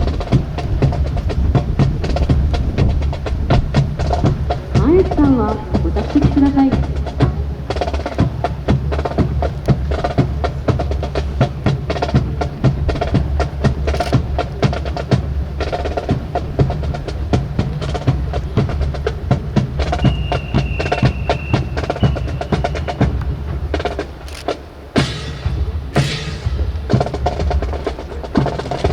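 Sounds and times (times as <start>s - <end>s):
snare drum strikes and rolls: 17.7s - 28.9s.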